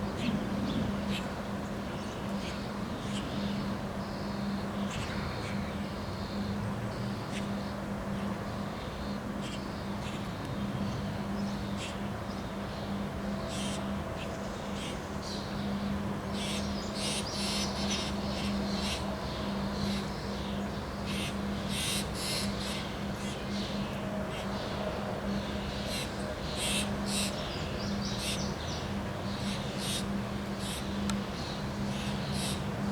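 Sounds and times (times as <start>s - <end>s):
birds chirping and calling: 25.8s - 32.7s.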